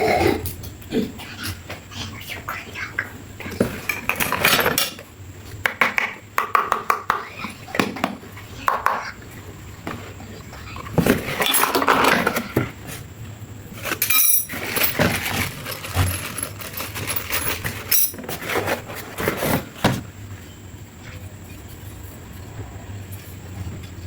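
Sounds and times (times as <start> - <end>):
metal parts clinking: 13.8 - 18.2.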